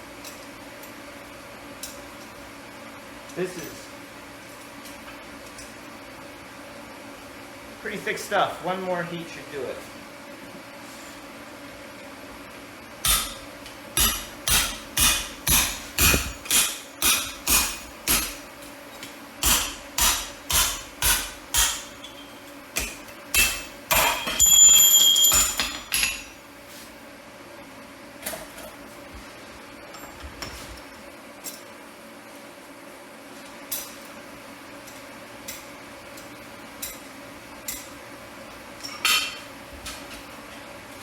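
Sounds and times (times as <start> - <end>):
hammer striking steel on anvil: 13.0 - 18.4, 19.4 - 26.3.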